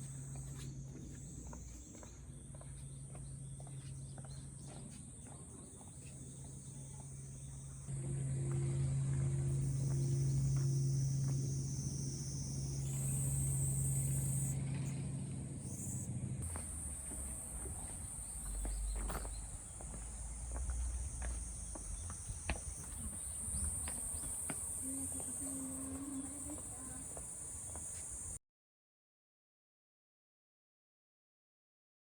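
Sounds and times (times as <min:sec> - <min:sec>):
low hum: 0:00.0 - 0:27.6
insects trilling: 0:09.5 - 0:14.8, 0:15.6 - 0:28.4.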